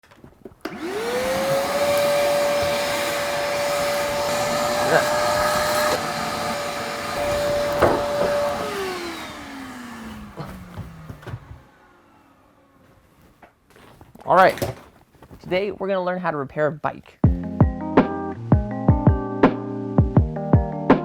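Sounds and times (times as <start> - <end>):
electric motor whining: 0.6 - 12.7.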